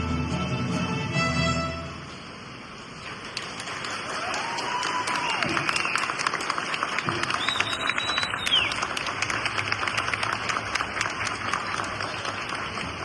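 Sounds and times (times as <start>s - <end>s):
audience applauding: 3.0s - 13.0s
falling whistle: 7.2s - 8.8s.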